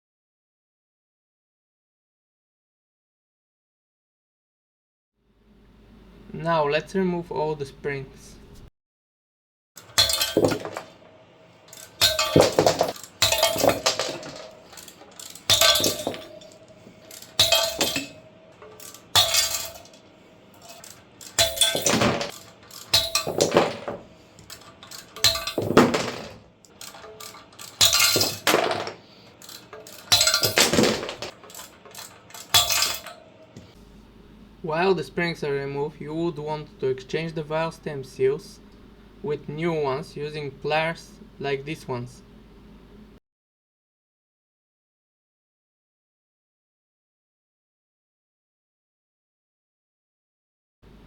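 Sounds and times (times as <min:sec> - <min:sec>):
metal valve springs clanking: 0:09.8 - 0:11.0, 0:11.6 - 0:33.3
metallic clattering with ringing: 0:09.8 - 0:11.0, 0:11.7 - 0:33.6.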